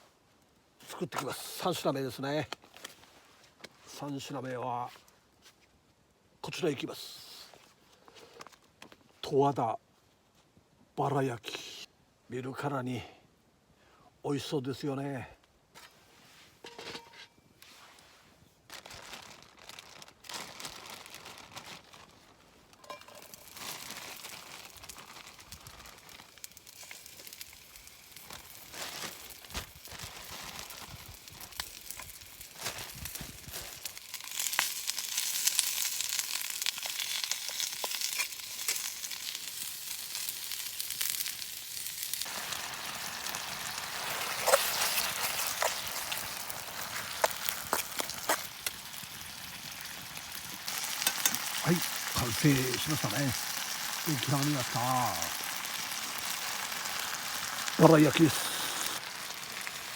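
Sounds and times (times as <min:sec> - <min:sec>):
crinkling and handling: 0:02.5 - 0:03.8, 0:15.8 - 0:59.9
meat sizzling in a hot pan: 0:22.8 - 0:59.9.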